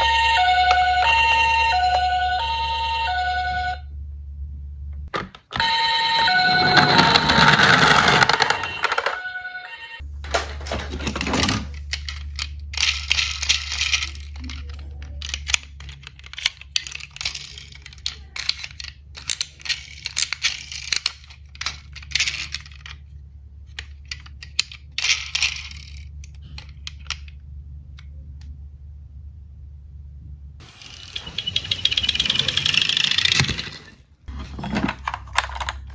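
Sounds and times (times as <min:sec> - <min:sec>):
steady low hum: 0:00.0 - 0:05.2, 0:21.4 - 0:32.5
metal toy cars clinking and rattling: 0:05.6 - 0:27.4, 0:30.6 - 0:35.9.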